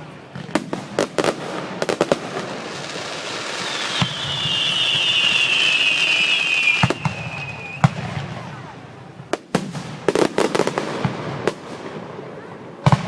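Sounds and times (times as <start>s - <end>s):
firework bangs: 0.2s - 13.0s
crackling firework pops: 0.3s - 8.4s, 12.8s - 13.0s
whistling firework: 0.4s - 8.7s.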